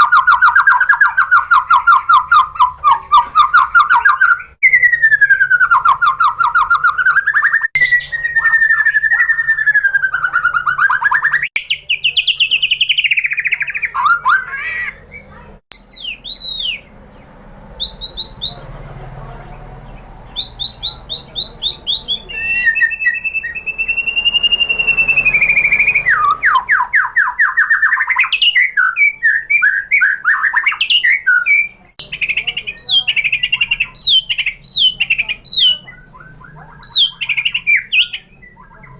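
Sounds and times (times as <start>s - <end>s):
bird buzzy trills: 0.0s - 18.8s, 19.7s - 38.9s
short high whistled notes: 22.3s - 26.7s.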